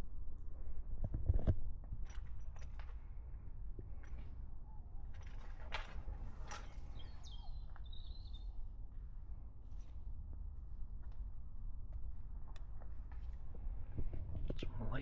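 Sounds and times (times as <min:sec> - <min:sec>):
small bird chirping: 0:06.9 - 0:08.6.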